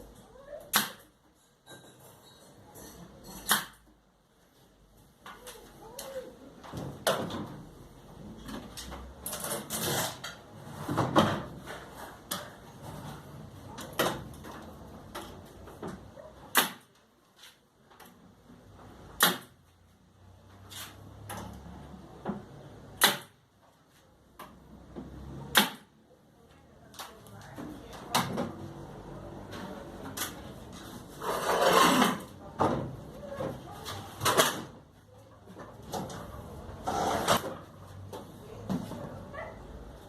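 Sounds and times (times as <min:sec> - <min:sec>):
sharp knocks of wood or tools: 0:19.2 - 0:19.6, 0:23.0 - 0:23.4.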